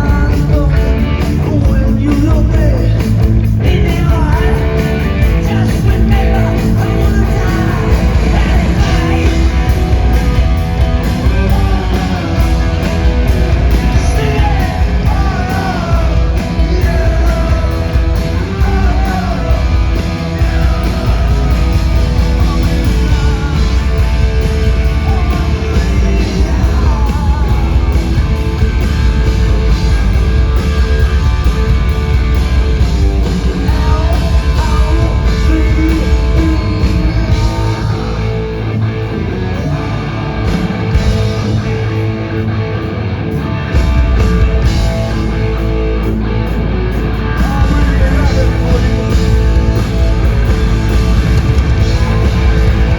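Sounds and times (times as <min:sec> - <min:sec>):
person singing and shouting: 0:00.0 - 0:28.6, 0:33.1 - 0:40.7, 0:47.3 - 0:52.9
punk rock band playing live: 0:00.0 - 0:52.9.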